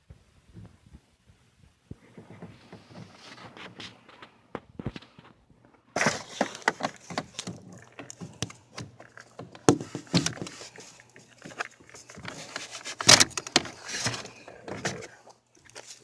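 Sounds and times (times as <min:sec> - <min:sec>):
clicks and rattling in car door: 0:12.2 - 0:14.2.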